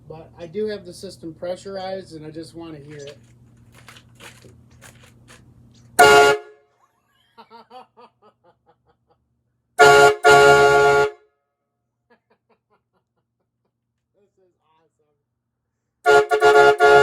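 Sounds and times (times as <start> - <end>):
air horn blasts: 6.0 - 6.6, 9.8 - 11.2, 16.1 - 17.0.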